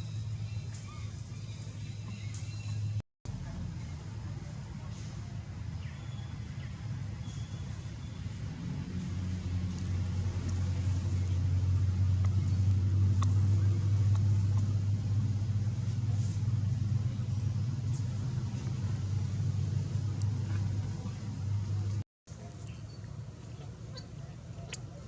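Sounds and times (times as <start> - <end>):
vehicle engine humming: 0.0 - 22.0.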